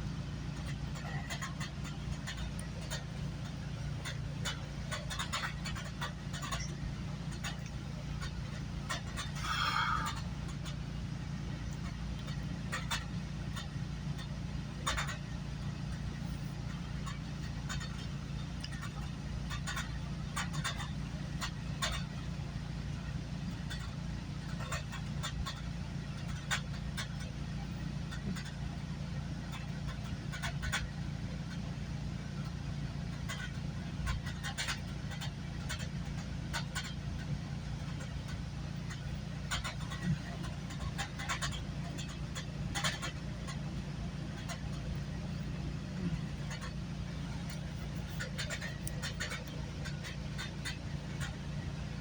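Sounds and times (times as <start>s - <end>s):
train rumbling on track: 0.0s - 52.0s
clicks and rattles: 0.5s - 10.9s, 11.6s - 22.4s, 32.4s - 51.9s.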